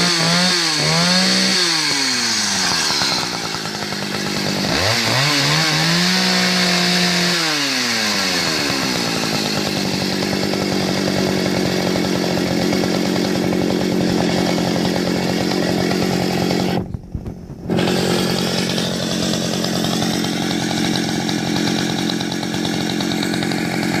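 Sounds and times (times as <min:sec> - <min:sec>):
chainsaw engine revving: 0:00.0 - 0:16.9, 0:17.6 - 0:24.0.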